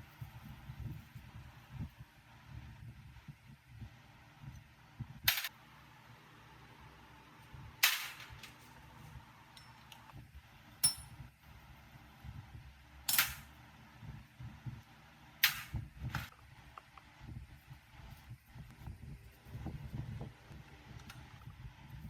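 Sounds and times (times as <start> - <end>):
tool strikes on metal: 10.8 - 11.2.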